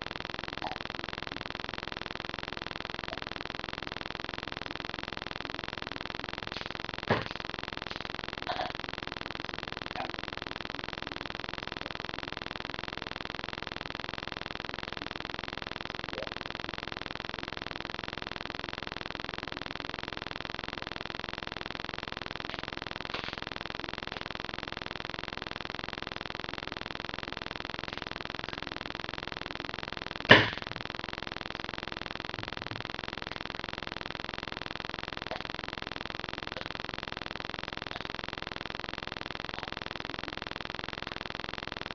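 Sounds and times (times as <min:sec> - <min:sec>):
microphone background hiss: 0:05.8 - 0:08.9, 0:30.2 - 0:31.1
sharp loud knock: 0:30.3 - 0:30.7.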